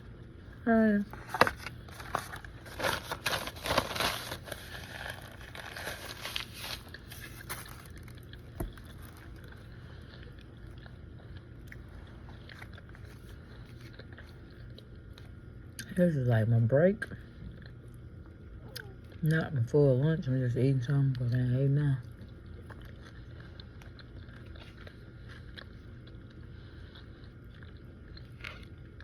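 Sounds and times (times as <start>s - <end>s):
crackly bites and chewing: 1.1s - 15.9s, 22.0s - 29.0s.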